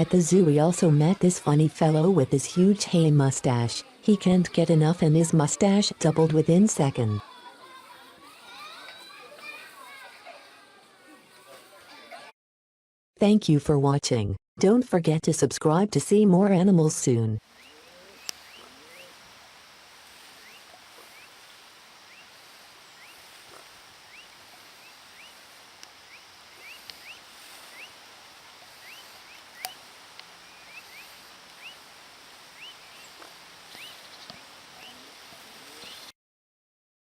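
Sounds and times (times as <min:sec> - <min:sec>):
steady hiss: 0:17.4 - 0:36.1
sharp clicks: 0:29.6 - 0:30.3.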